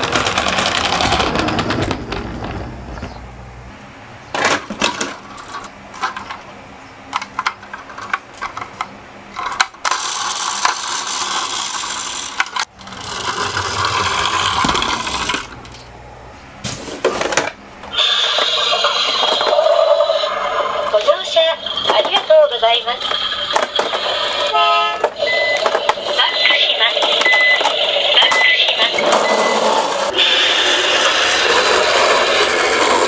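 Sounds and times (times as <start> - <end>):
toy cars rattling down a slope: 0.0 - 2.7, 9.4 - 15.6, 29.0 - 33.0.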